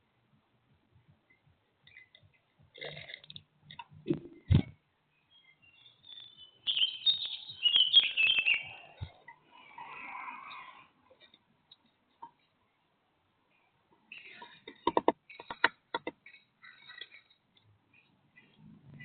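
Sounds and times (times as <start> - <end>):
high bird chirps: 5.2 - 10.8.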